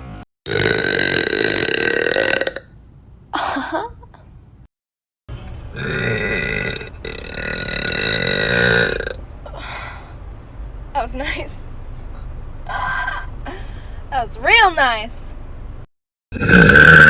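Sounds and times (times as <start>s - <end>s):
woman belching slowed down: 0.5s - 2.7s, 5.8s - 9.2s, 16.3s - 17.0s.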